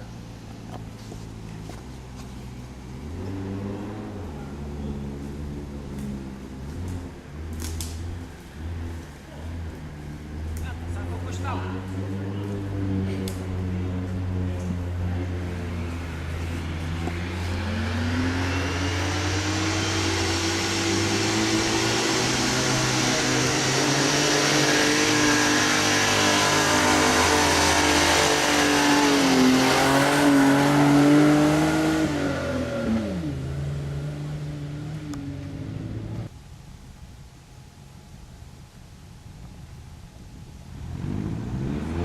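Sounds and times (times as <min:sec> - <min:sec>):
off-road vehicle engine revving: 0:00.0 - 0:36.3, 0:40.7 - 0:42.0.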